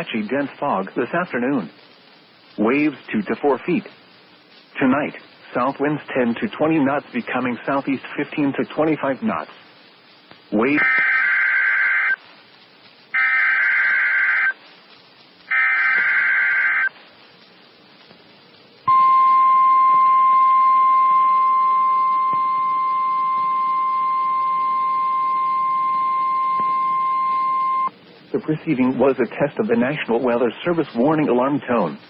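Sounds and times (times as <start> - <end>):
buzzy warbling data bursts: 10.6 - 12.2, 13.1 - 14.6, 15.5 - 17.0, 21.1 - 27.9
steady warning alarm tone: 13.2 - 14.6, 15.5 - 16.9, 18.9 - 27.9.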